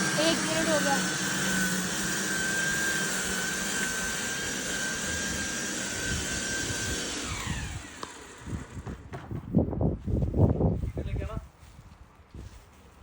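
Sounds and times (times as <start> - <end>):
electric dethatcher whining: 0.0 - 9.1
knocks and rustles: 8.8 - 9.7.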